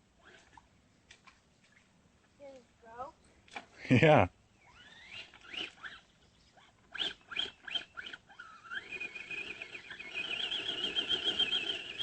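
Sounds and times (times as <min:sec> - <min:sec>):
electric motor whining: 0:06.9 - 0:12.0.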